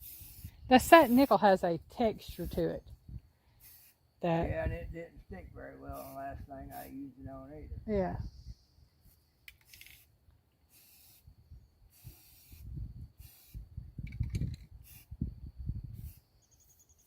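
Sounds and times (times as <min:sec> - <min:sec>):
spray paint can hissing: 0:00.0 - 0:01.4, 0:03.6 - 0:04.0, 0:05.9 - 0:06.9, 0:10.7 - 0:11.3, 0:11.9 - 0:15.2, 0:15.9 - 0:16.2.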